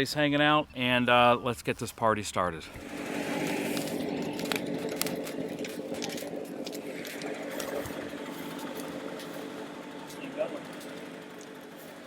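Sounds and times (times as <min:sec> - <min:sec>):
motor humming: 0:02.8 - 0:12.0.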